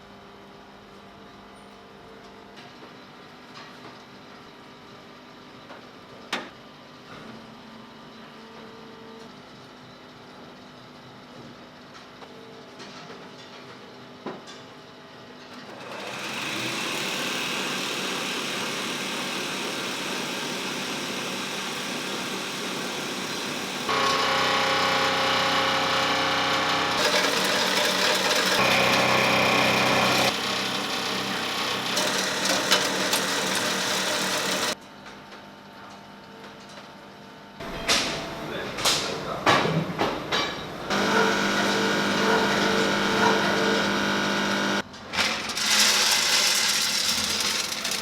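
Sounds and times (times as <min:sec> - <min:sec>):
machinery humming and hissing: 0:15.9 - 0:34.8, 0:37.6 - 0:44.8.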